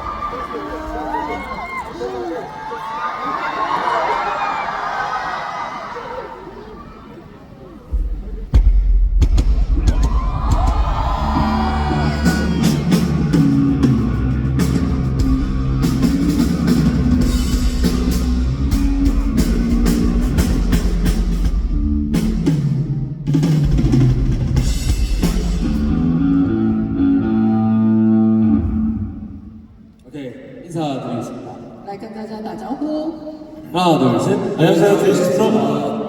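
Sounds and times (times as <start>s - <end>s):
rock band playing live: 9.3s - 29.3s.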